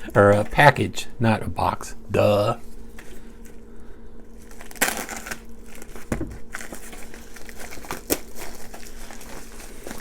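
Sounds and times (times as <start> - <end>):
package crinkling and rustling: 4.3 - 10.0.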